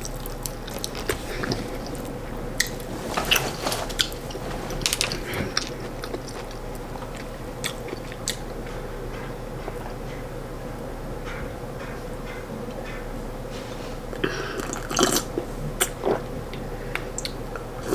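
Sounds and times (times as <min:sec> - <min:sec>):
person chewing food: 0:00.0 - 0:10.0, 0:14.2 - 0:17.9
faint steady hum: 0:00.0 - 0:17.9.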